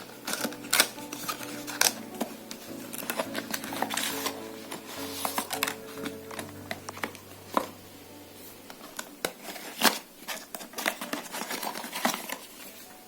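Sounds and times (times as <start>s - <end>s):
cardboard and paper rustling: 0.0s - 7.8s, 8.4s - 13.0s.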